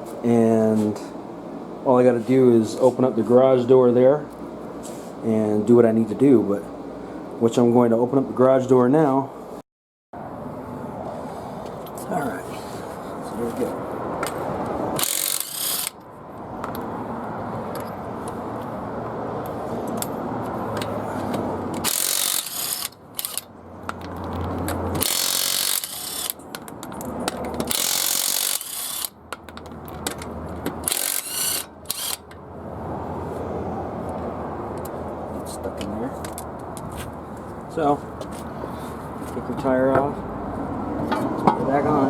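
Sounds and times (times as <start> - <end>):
impact wrench hammering: 15.0 - 16.0, 20.7 - 24.1, 24.9 - 32.4.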